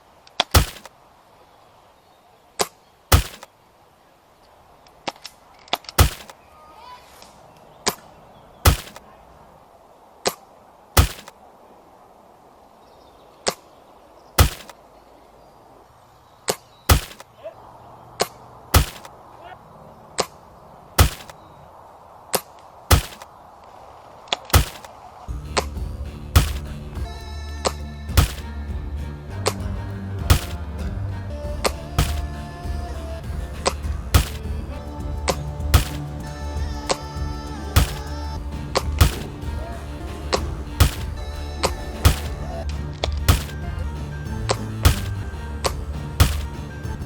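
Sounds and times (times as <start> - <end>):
sharp crack: 0.3 - 1.0, 2.6 - 3.6, 4.8 - 6.4, 7.2 - 9.2, 10.2 - 11.4, 14.4 - 14.8, 16.5 - 17.4, 18.2 - 19.5, 20.2 - 21.4, 22.3 - 28.7, 29.4 - 47.0
airsoft rifle shot snaps: 0.4 - 1.0, 2.6 - 3.5, 5.8 - 6.4, 8.7 - 9.1, 11.0 - 11.4, 14.4 - 14.8, 16.5 - 17.3, 18.2 - 19.2, 21.0 - 21.4, 22.4 - 23.3, 24.5 - 25.0, 26.4 - 26.7, 28.2 - 28.5, 30.3 - 30.6, 32.0 - 32.2, 34.2 - 34.5, 35.7 - 36.1, 37.8 - 38.2, 38.8 - 39.3, 40.3 - 41.2, 42.0 - 42.4, 43.3 - 43.6, 44.8 - 46.5.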